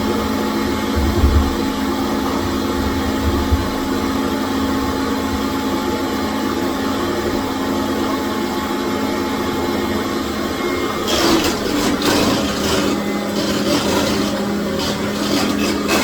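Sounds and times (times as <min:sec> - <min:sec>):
vacuum cleaner running: 0:00.0 - 0:16.0
nozzle scraping floor: 0:10.9 - 0:16.0.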